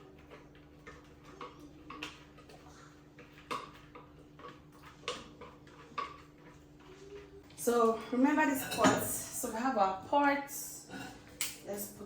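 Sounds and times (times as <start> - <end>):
kitchen utensils clicking and knocking: 7.6 - 10.0.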